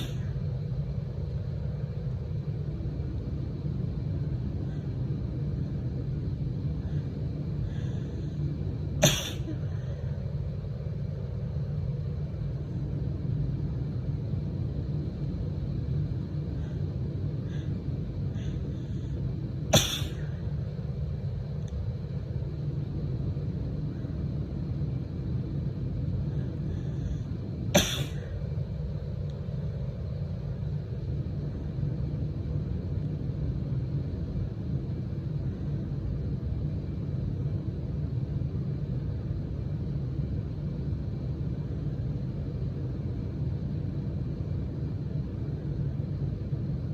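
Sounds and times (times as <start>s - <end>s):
steady low rumble: 0.0s - 46.9s
woman sneezing: 9.0s - 9.9s, 19.8s - 20.3s, 27.8s - 28.3s.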